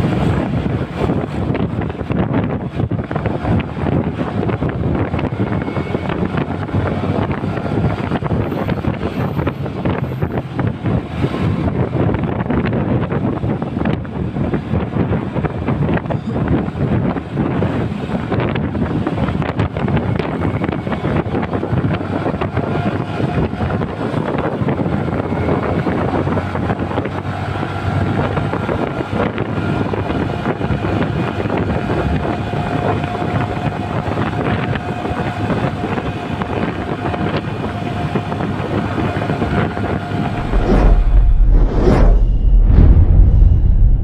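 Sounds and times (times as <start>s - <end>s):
wind buffeting microphone: 0.0s - 44.0s
loud deep rumble: 16.8s - 44.0s.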